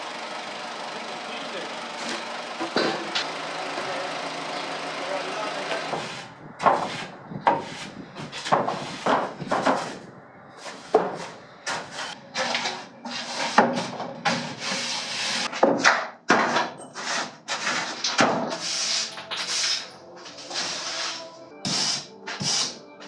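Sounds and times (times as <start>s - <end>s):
rough scraping and rubbing: 5.2s - 15.7s, 16.4s - 22.9s.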